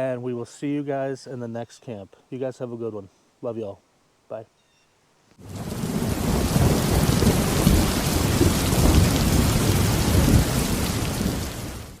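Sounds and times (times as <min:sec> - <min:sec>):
roar of falling water: 0:05.4 - 0:12.0.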